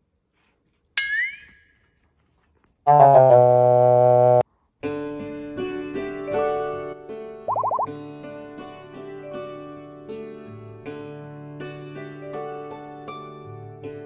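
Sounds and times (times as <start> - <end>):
keyboard music: 2.9 - 4.4, 7.5 - 8.0
cartoon ringing sound effect: 7.5 - 7.9.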